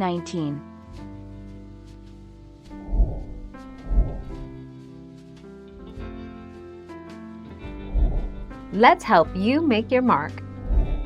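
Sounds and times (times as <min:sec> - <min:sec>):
soft plucked guitar-like music: 0:04.6 - 0:11.0.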